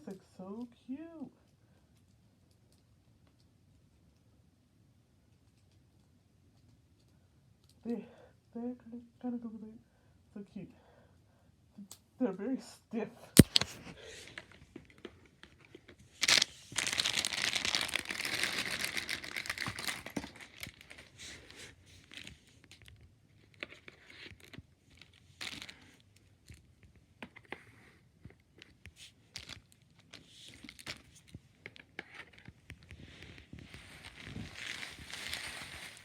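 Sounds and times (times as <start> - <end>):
small rustles and clicks: 1.4 - 4.4, 5.2 - 7.8, 13.4 - 36.0
wrapping crumpled and torn: 13.4 - 26.7, 28.5 - 36.0.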